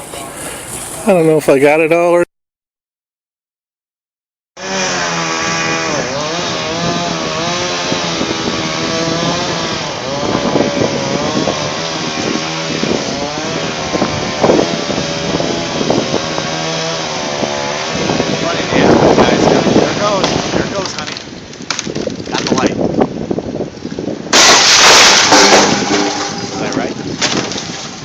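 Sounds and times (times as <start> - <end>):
chainsaw cutting: 4.6 - 21.2.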